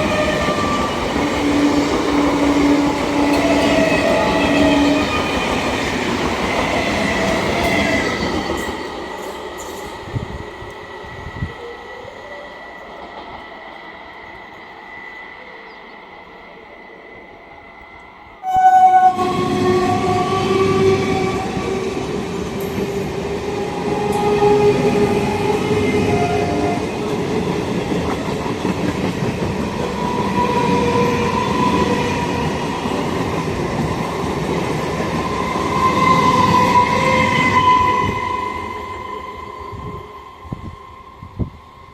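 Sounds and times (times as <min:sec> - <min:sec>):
train horn blasts: 0:00.0 - 0:05.7, 0:18.4 - 0:22.0, 0:22.8 - 0:27.2, 0:29.8 - 0:32.7, 0:35.6 - 0:41.6
train wheels clattering on rails: 0:00.0 - 0:15.1, 0:21.6 - 0:37.2.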